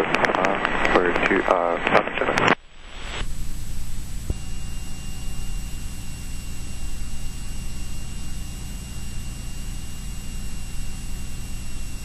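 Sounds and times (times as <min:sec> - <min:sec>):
aircraft engine drone: 0:00.0 - 0:12.0
high whining tones: 0:02.6 - 0:12.0.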